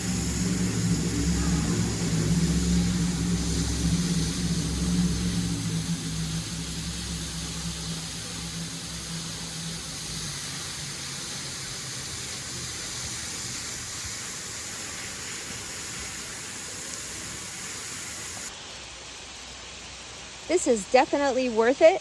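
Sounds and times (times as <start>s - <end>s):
low hum: 0.0s - 13.4s
waterfall rushing into pool: 0.0s - 22.0s.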